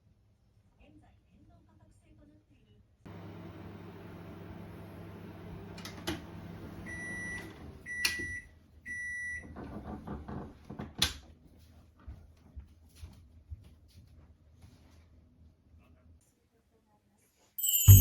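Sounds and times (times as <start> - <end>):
microwave oven humming: 3.1 - 10.1
microwave short beeps: 6.7 - 9.4.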